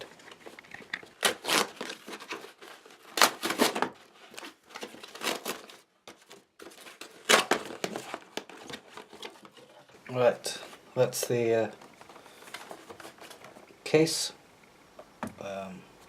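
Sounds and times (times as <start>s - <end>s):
packaging being torn open: 0.0s - 9.3s
packaging rustling: 0.0s - 13.7s.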